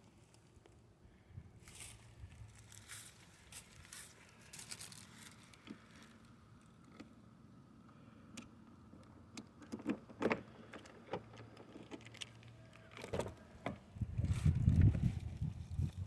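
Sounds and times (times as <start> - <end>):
car engine rough rumble: 10.0 - 16.0.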